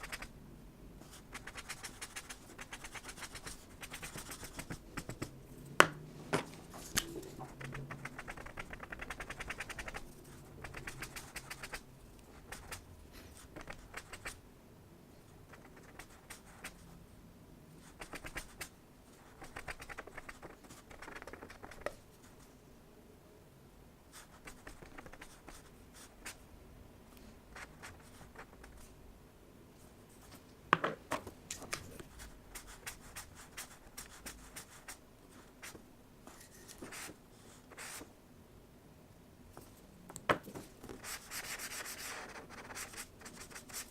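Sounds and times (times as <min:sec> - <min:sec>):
pen scratching on paper: 0:01.1 - 0:05.3, 0:06.7 - 0:14.4, 0:17.8 - 0:21.9, 0:35.6 - 0:37.1, 0:40.8 - 0:43.9.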